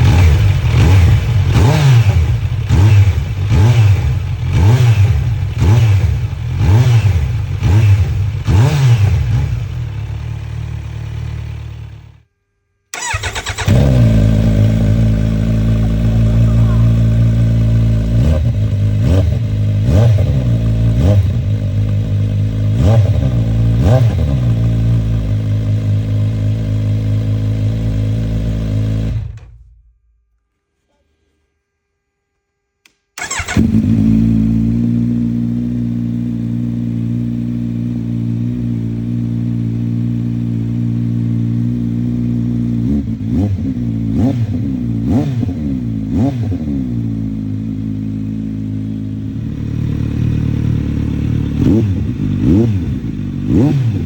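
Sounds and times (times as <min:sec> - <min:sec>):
motorcycle engine idling: 0:09.2 - 0:12.2, 0:13.0 - 0:29.3, 0:46.8 - 0:54.0
engine throttle blips: 0:12.9 - 0:25.3, 0:33.2 - 0:34.8.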